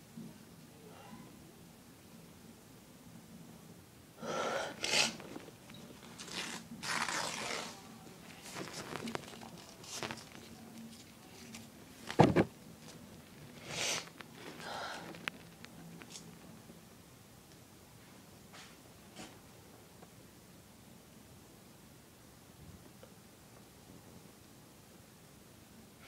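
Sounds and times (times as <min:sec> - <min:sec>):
person breathing noisily: 0:04.2 - 0:05.2, 0:13.6 - 0:15.3.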